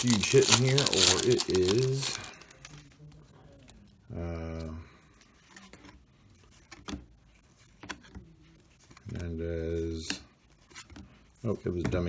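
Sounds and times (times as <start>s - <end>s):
cards rustling: 0.0s - 2.8s.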